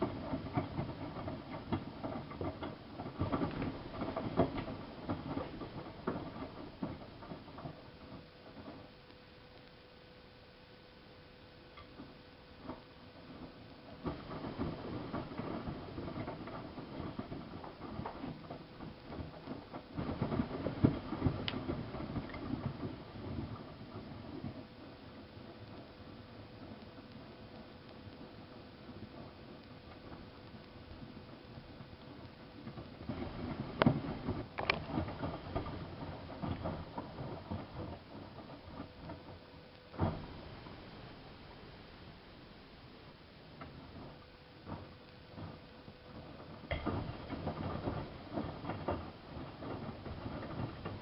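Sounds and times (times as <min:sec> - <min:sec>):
soft irregular knocks: 0:00.0 - 0:09.0
washing machine drum tumbling laundry: 0:00.0 - 0:09.0, 0:11.7 - 0:41.4, 0:43.0 - 0:51.0.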